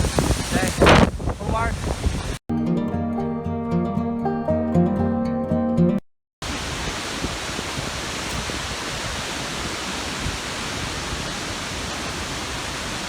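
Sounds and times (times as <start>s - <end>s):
waterfall rushing: 6.4s - 13.0s.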